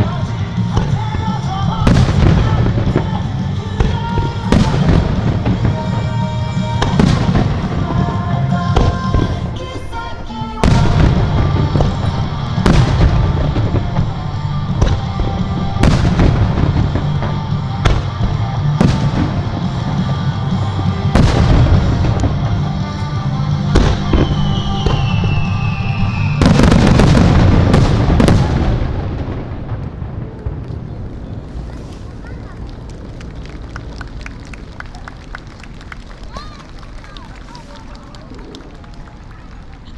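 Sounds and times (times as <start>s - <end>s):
crackling firework bursts: 0.0s - 39.9s
falling firework whistle: 23.7s - 28.7s.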